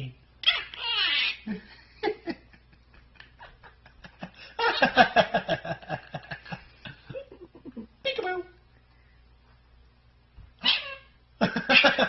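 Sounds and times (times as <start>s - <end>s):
parrot laugh-like syllables: 10.6s - 12.0s.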